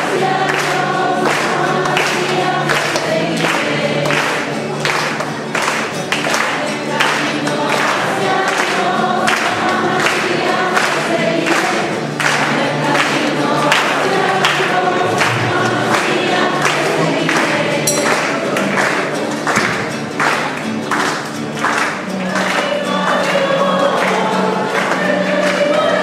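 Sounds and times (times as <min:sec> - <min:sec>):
choir singing a hymn: 0:00.0 - 0:04.5, 0:06.4 - 0:19.6, 0:22.2 - 0:26.0
rhythmic accompaniment: 0:17.8 - 0:22.1.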